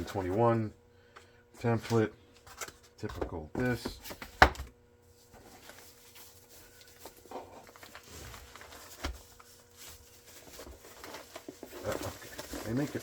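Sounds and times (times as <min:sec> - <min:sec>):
packaging rustling: 0:05.2 - 0:13.0.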